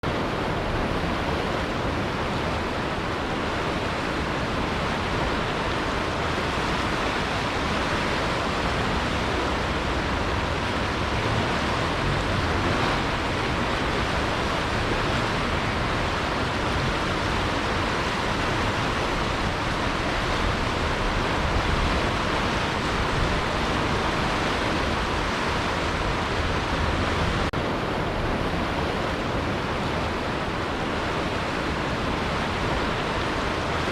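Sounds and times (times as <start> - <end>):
steady rushing noise: 0.0 - 33.9.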